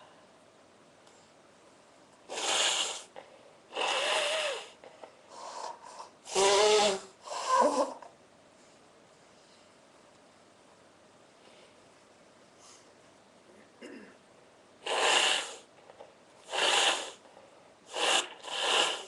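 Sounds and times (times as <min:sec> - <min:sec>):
person snorting nasal blasts: 0:02.3 - 0:04.8, 0:05.4 - 0:08.0, 0:14.8 - 0:15.7, 0:16.4 - 0:17.2, 0:17.9 - 0:19.0.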